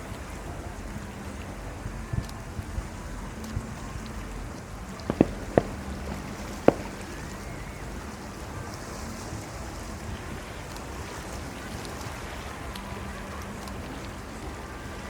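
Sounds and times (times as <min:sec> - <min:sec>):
steady rushing noise: 0:04.3 - 0:08.0
fireworks bangs: 0:05.1 - 0:07.6.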